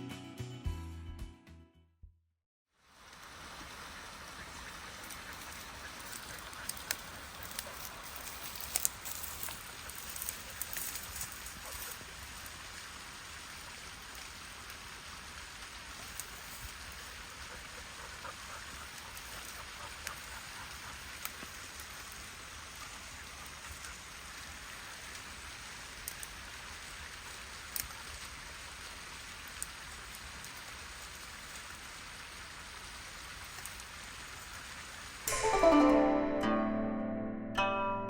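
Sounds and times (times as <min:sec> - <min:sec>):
water splashing down waterfall: 0:02.8 - 0:18.0, 0:20.1 - 0:35.2
plucked string music: 0:35.3 - 0:38.0.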